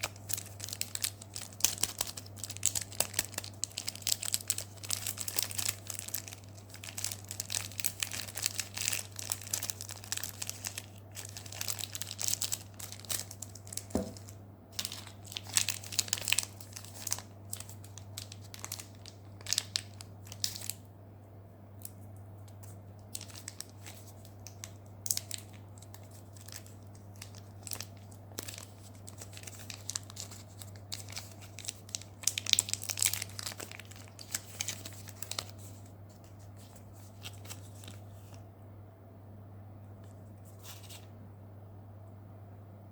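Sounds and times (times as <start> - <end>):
candy wrappers crinkling and tearing: 0.0 - 20.9, 21.8 - 38.4
steady low hum: 0.0 - 42.9.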